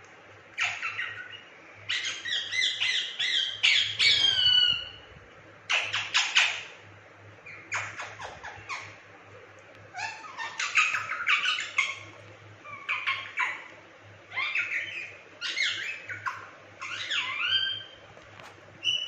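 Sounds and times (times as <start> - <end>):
parrot squawking: 0.6 - 5.0, 5.7 - 6.7, 9.9 - 13.7, 14.3 - 18.0.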